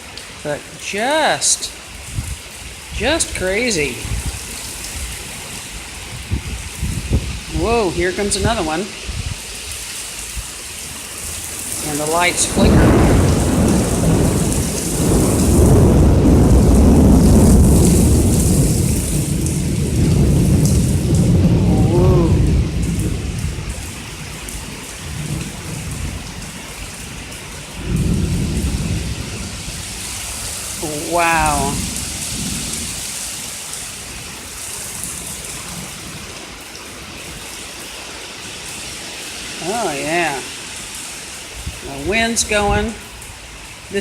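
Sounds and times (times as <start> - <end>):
torrential rain pouring: 0.0 - 44.0
deep rumble of thunder: 4.0 - 5.2, 6.0 - 8.0, 11.6 - 30.8, 31.5 - 33.2.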